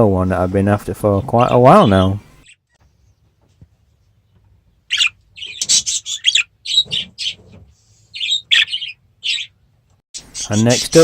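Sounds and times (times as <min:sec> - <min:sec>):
budgerigars chirping: 0:04.9 - 0:09.6.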